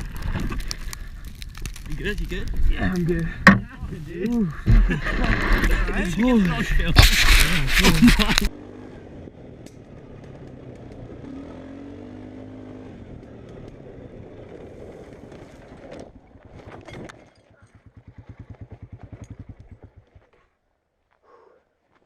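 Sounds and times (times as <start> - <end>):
atv engine puttering: 2.9 - 20.3
sharp knocks: 3.4 - 3.7.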